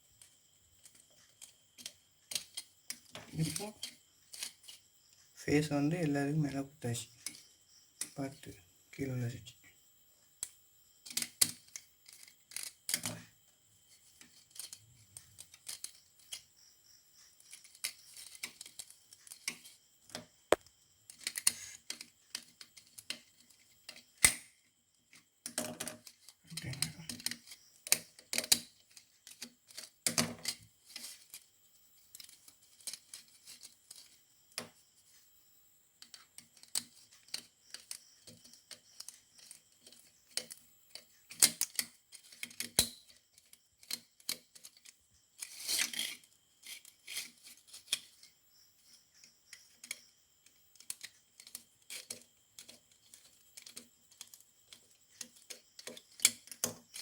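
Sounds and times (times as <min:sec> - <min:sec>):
scraping rustle: 0:36.5 - 0:49.0.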